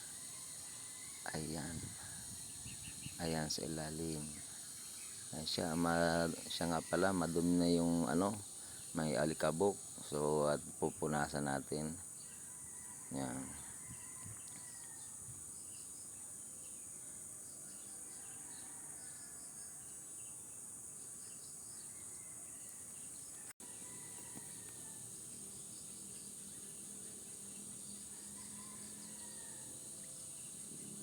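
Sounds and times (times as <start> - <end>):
high-pitched insect drone: 0.0 - 12.1, 13.1 - 14.8, 23.7 - 31.0
faint insect chirps: 0.0 - 31.0.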